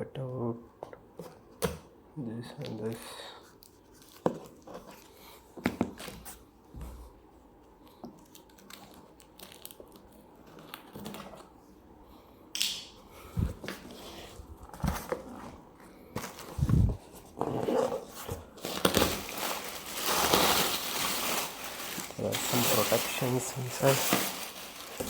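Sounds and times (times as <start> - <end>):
packing knocks and crinkles: 14.6 - 25.0
sharp ripping: 18.7 - 25.0.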